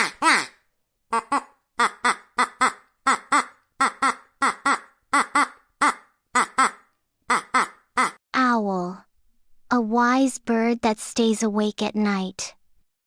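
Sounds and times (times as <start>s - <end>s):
duck quacking: 0.0s - 8.2s.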